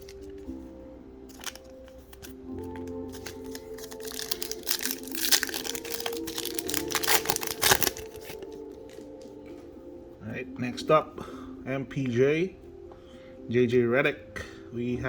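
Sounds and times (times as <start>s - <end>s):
plastic wrapper crinkling: 0.0s - 0.5s, 1.3s - 9.4s.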